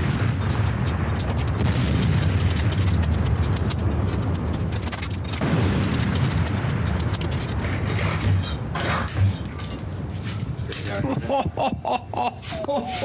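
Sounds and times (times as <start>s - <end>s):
falling masonry crashing: 4.9s - 10.8s.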